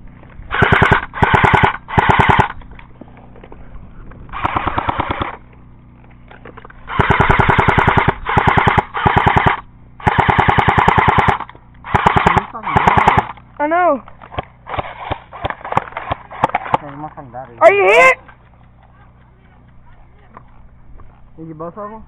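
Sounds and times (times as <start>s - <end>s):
airsoft rifle firing bursts: 0.5s - 2.6s, 4.4s - 5.4s, 6.9s - 13.4s, 14.3s - 16.8s.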